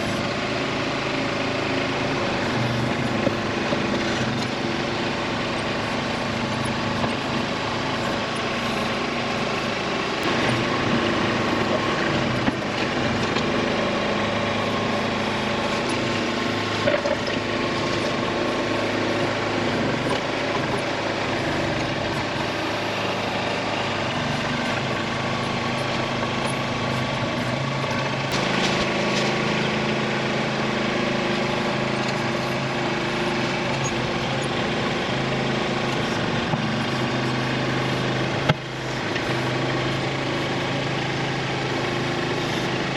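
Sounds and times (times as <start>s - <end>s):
tractor engine running: 0.0s - 42.9s.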